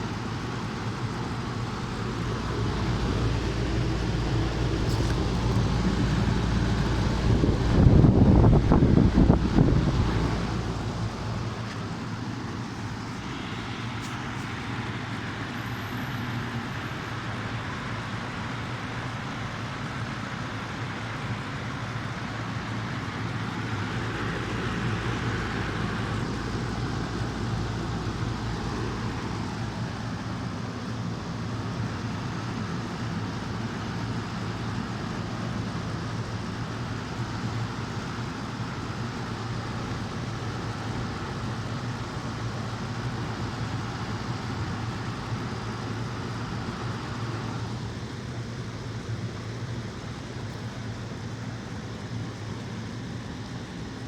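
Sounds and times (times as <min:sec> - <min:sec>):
air conditioner running: 0:00.0 - 0:12.2.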